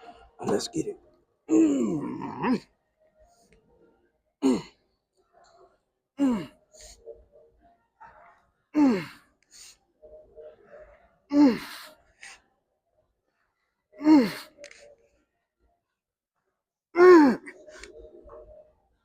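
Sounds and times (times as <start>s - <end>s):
man grunting: 1.5s - 2.6s, 11.3s - 11.8s.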